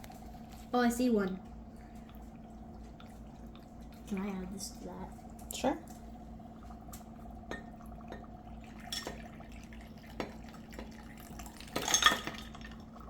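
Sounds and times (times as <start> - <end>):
clinking splash: 11.4 - 12.8
ice clinking in glass: 11.5 - 12.8.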